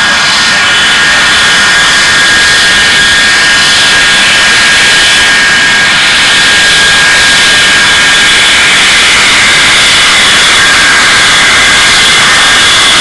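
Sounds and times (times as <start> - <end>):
high jet whine: 0.0 - 13.0
jet engines running: 0.0 - 13.0.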